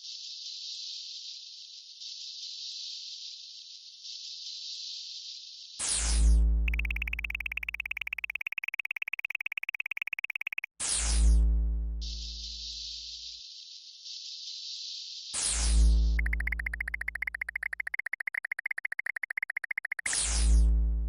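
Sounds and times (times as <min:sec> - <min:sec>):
low electronic tone with sweep: 0:06.7 - 0:10.7, 0:16.1 - 0:18.1
rapid pulsing buzz: 0:06.7 - 0:10.7, 0:16.2 - 0:20.1.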